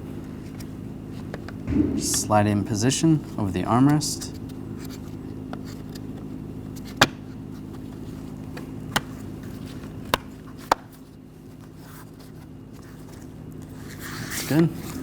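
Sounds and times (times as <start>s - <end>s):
steady low hum: 1.7s - 4.5s.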